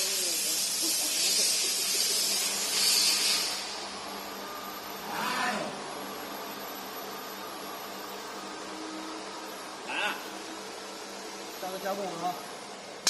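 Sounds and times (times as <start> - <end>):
pneumatic air hissing: 0.0 - 4.0.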